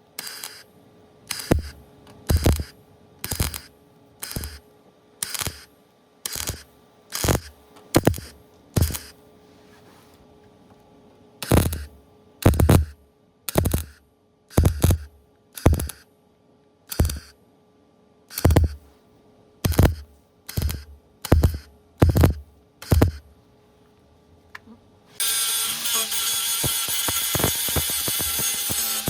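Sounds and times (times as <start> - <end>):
power tool running: 14.5 - 16.0, 18.3 - 18.8, 25.2 - 29.0.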